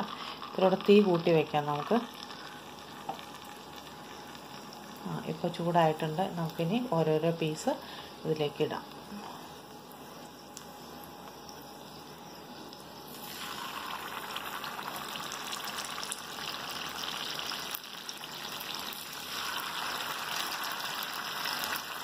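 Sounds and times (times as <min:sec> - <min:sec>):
potato wedges sizzling in oil: 0:00.0 - 0:22.0.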